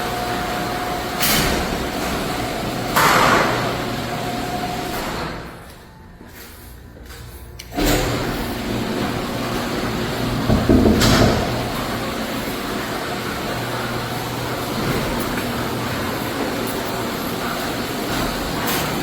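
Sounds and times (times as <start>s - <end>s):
garage door opener motor running: 0.0s - 5.8s, 7.6s - 19.0s
garage door clunk: 7.7s - 19.0s.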